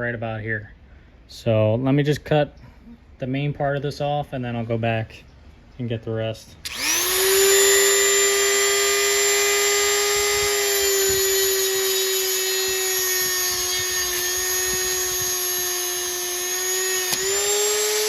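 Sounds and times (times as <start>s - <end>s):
rotary tool cutting whine: 6.6s - 18.0s
cut-off wheel snapping: 16.8s - 17.4s.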